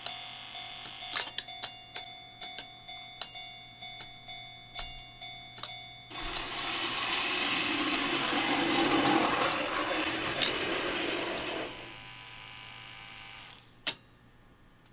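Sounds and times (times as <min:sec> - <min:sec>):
model train wheels rattling: 0:06.1 - 0:11.9.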